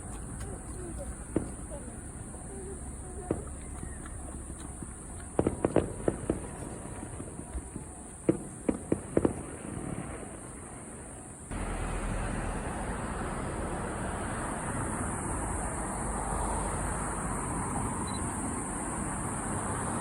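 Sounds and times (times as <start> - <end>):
fireworks bangs: 0.0 - 13.9.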